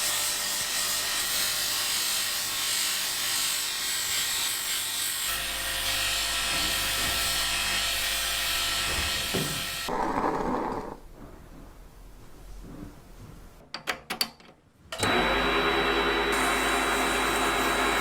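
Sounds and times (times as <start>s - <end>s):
power tool motor running: 15.0s - 18.0s.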